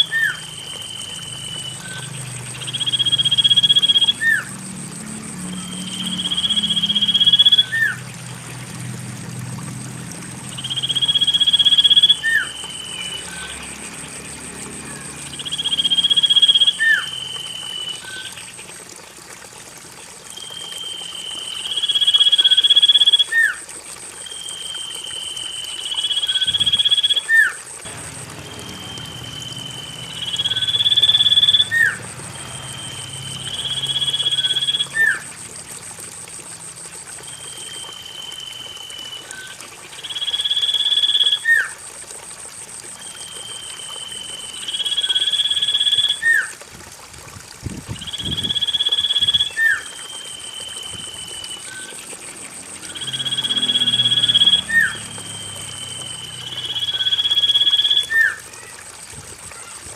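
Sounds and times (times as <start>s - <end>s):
bird whistled song: 0.0s - 4.5s, 5.5s - 8.0s, 10.5s - 13.7s, 15.3s - 18.4s, 20.3s - 23.6s, 28.4s - 32.0s, 32.6s - 35.2s, 37.3s - 41.7s, 43.0s - 46.5s, 48.0s - 51.9s, 52.9s - 58.4s
thin high-pitched tone: 27.9s - 35.3s.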